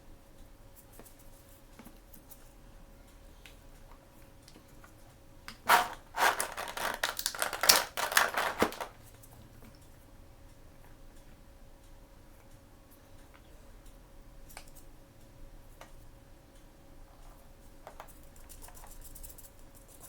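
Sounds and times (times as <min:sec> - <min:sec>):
packaging torn and crinkled: 0:05.7 - 0:09.0.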